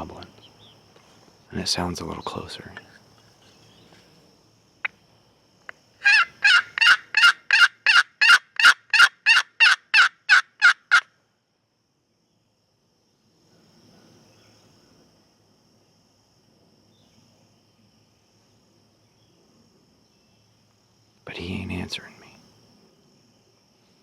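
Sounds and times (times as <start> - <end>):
turkey call yelps: 6.0 - 11.1.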